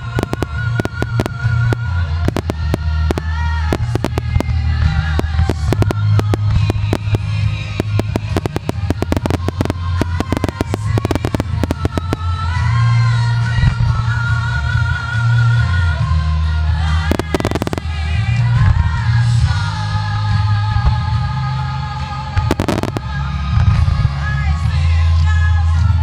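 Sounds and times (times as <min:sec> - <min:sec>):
fireworks bursting: 0:00.0 - 0:12.3, 0:17.1 - 0:18.1, 0:22.4 - 0:23.1
steady bass line: 0:00.0 - 0:12.9, 0:17.0 - 0:18.4, 0:22.3 - 0:23.2
song with singing voice: 0:00.0 - 0:26.0.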